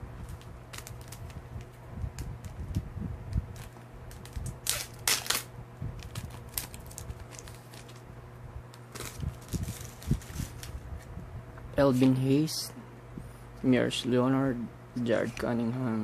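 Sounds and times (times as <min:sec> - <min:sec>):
steady low hum: 0:00.0 - 0:16.0
pack wrapper crinkling: 0:00.2 - 0:01.4, 0:03.5 - 0:08.1, 0:08.8 - 0:10.8
cards clicking and crinkling: 0:00.2 - 0:08.1, 0:08.7 - 0:10.8.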